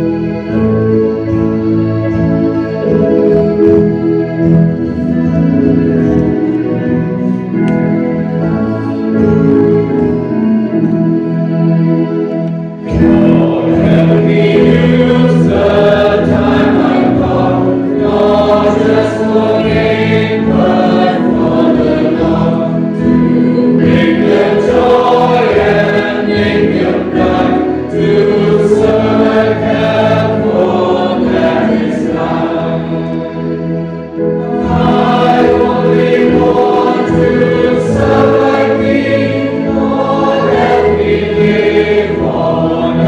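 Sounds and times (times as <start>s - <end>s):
congregation singing a hymn: 0.0s - 43.0s
organ accompaniment: 0.0s - 43.0s.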